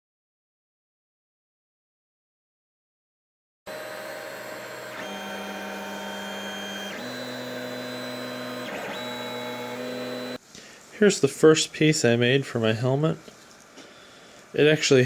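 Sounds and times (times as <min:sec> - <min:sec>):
stepper motors whining: 0:03.7 - 0:10.4.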